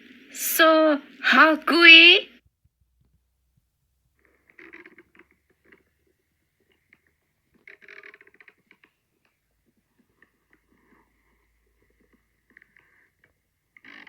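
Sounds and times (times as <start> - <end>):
stomach growling: 4.2 - 14.0.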